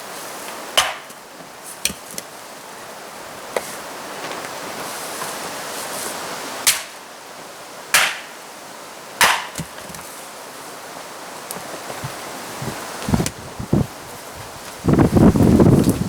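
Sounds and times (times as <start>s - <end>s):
wood being split: 0.8s - 1.2s, 6.7s - 7.0s, 8.0s - 8.3s, 9.2s - 10.0s.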